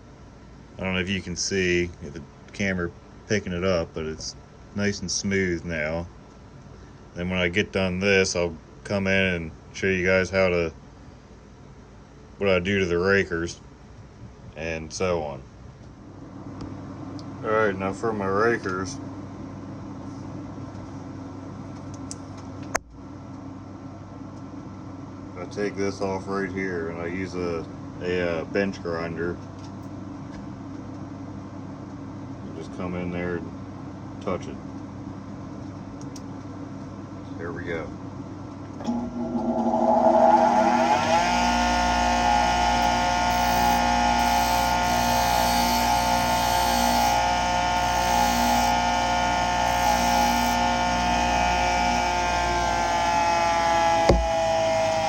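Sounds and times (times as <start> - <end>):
low machine hum: 12.0 - 55.0
bench grinder motor whine: 38.8 - 55.0.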